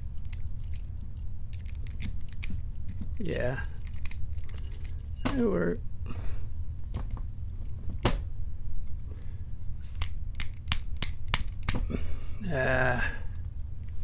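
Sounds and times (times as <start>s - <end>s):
padlock and keys clicking: 0.0s - 5.5s, 10.0s - 11.8s
man humming: 3.2s - 3.8s, 5.3s - 5.8s, 11.9s - 13.4s.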